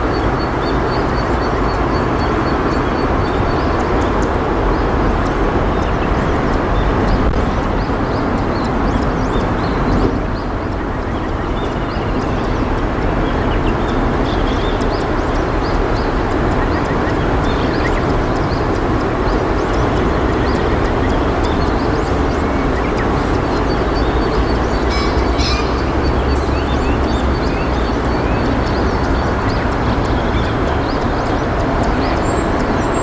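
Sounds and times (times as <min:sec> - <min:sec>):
river water flowing over rocks: 0:10.0 - 0:33.0.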